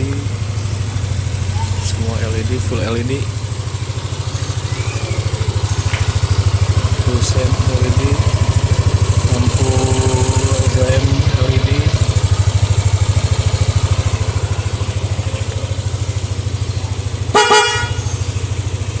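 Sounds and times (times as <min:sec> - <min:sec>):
scooter engine idling: 0:00.0 - 0:19.0
horn honk: 0:17.1 - 0:18.8.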